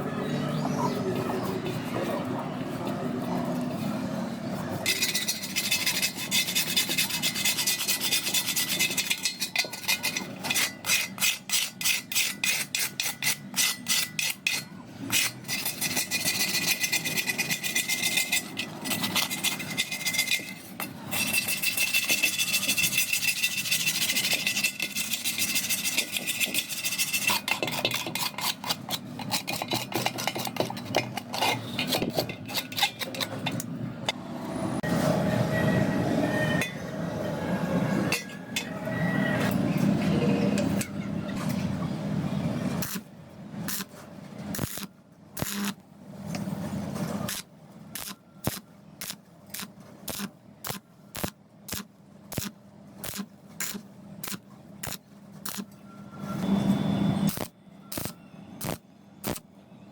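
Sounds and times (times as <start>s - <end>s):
file scraping: 4.8s - 33.5s
hand file rasping: 4.9s - 33.2s.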